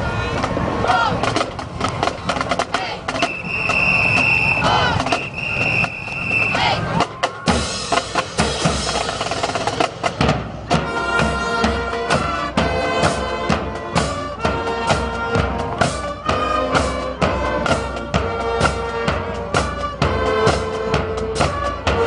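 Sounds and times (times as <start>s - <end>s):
loud music with drum beat: 6.6s - 22.0s.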